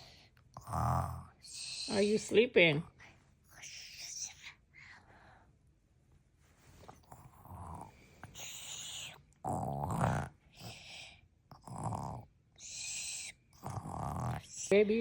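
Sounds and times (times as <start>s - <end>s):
girl fake-snoring: 7.2s - 14.6s.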